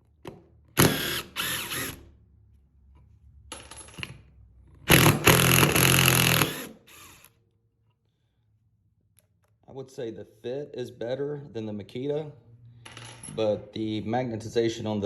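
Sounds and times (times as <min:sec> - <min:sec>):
impact driver driving screws: 0:00.8 - 0:02.0, 0:04.8 - 0:07.3.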